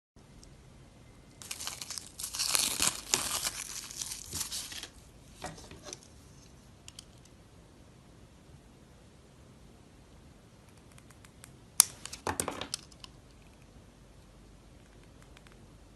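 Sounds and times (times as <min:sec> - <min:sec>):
dry soap crunching: 0:01.4 - 0:05.0.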